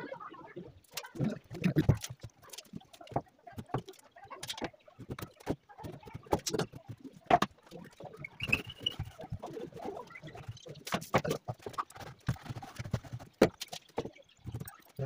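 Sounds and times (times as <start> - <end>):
high squeak: 8.2 - 9.1.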